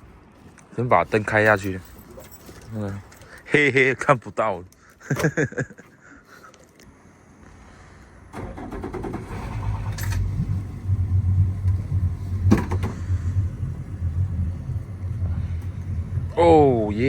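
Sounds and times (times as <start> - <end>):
boat engine starting and idling: 7.6 - 17.0.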